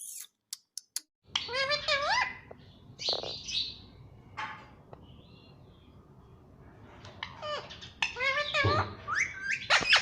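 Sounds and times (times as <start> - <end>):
parrot calling: 1.3 - 2.5, 7.2 - 10.0.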